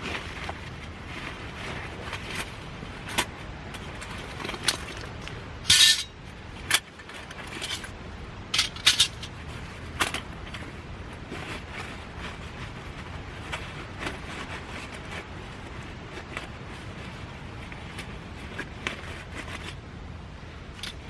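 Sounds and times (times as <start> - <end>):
metal gear clinking: 5.7 - 6.8.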